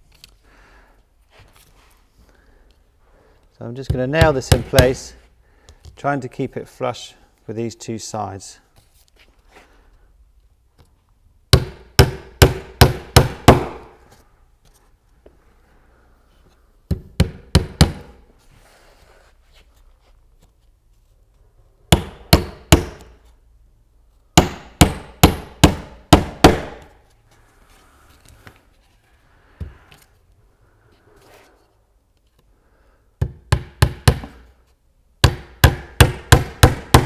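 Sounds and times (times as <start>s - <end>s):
hammer driving nails into wood: 3.9s - 5.1s, 11.5s - 14.0s, 16.9s - 18.2s, 21.9s - 23.2s, 24.4s - 26.9s, 33.2s - 34.5s, 35.2s - 37.0s.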